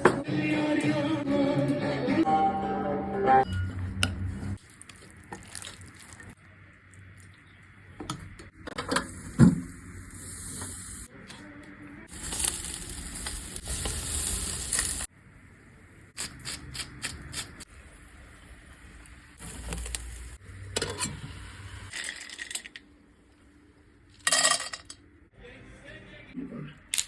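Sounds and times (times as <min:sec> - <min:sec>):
meat sizzling over fire: 0:09.1 - 0:11.1, 0:12.1 - 0:15.1, 0:16.1 - 0:20.5.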